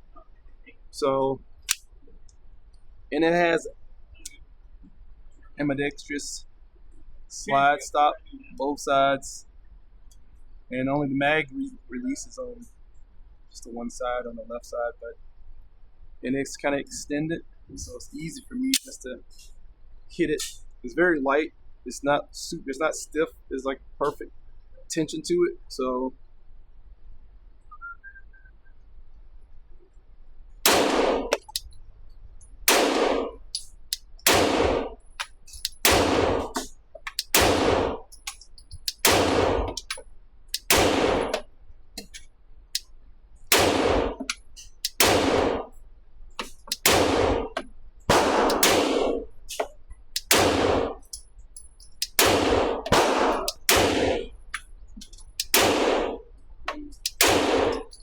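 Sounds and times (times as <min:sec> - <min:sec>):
pistol shots ringing: 0:30.7 - 0:31.6, 0:32.7 - 0:33.6, 0:34.2 - 0:40.0, 0:40.6 - 0:41.4, 0:43.5 - 0:45.7, 0:46.4 - 0:49.6, 0:50.2 - 0:51.1, 0:52.0 - 0:54.4, 0:55.4 - 0:56.2, 0:57.0 - 0:58.0.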